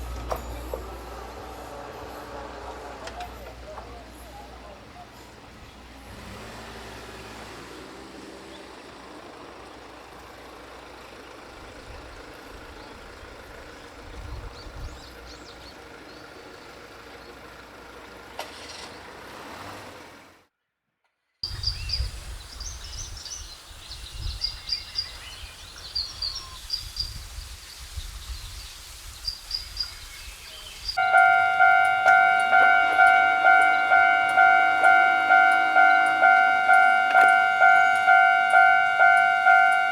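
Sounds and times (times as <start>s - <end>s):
level-crossing warning bell: 0.0s - 6.5s, 31.0s - 39.9s
outdoor background noise: 0.0s - 39.9s
small birds chirping: 8.2s - 19.2s, 21.4s - 39.9s.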